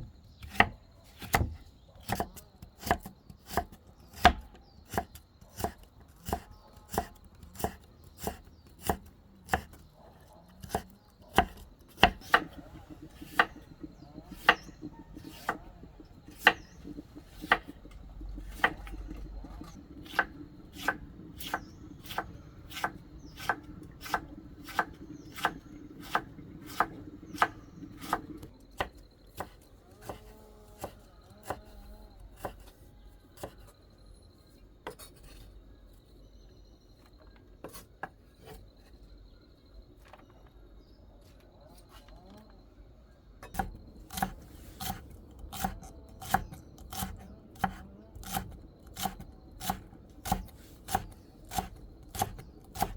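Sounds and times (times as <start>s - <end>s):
knife chopping on cutting board: 0.5s - 9.8s, 10.6s - 17.8s, 18.4s - 30.2s, 43.5s - 52.9s.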